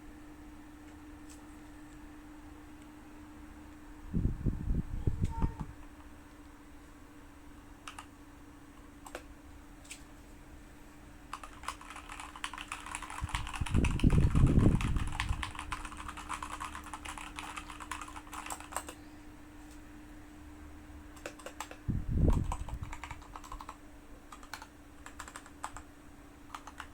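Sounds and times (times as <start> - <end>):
mechanical keyboard typing: 7.8 - 8.1, 9.0 - 9.3, 11.3 - 19.0, 21.2 - 25.9, 26.5 - 26.9.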